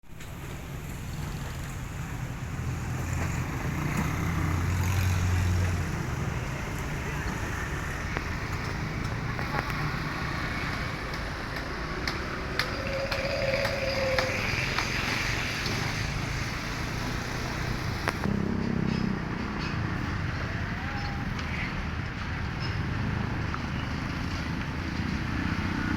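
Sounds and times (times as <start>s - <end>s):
low vehicle rumble: 0.1s - 22.6s
steady background noise: 0.1s - 25.9s
railroad crossing bell clanging: 12.4s - 16.6s.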